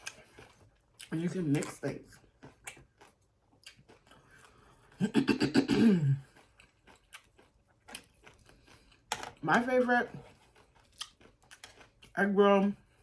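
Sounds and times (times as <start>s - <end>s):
chewing and mouth clicks: 0.0s - 5.0s, 6.2s - 9.4s, 10.2s - 12.2s.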